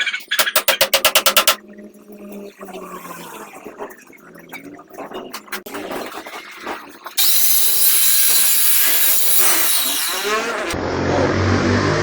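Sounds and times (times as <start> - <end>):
saw cutting through wood: 7.2 - 10.8.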